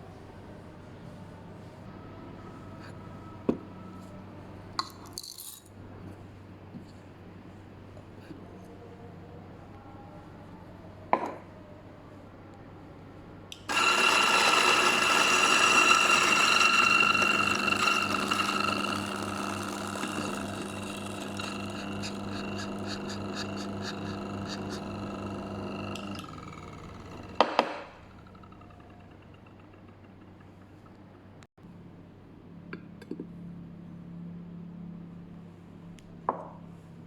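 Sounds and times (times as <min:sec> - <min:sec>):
coffee grinder grinding beans: 0:13.6 - 0:30.2.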